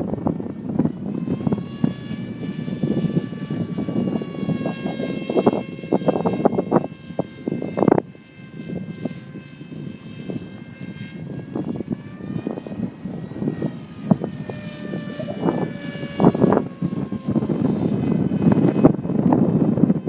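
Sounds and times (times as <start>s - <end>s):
electric motor and propeller whining: 0.0s - 20.0s
wind buffeting microphone: 0.0s - 20.0s.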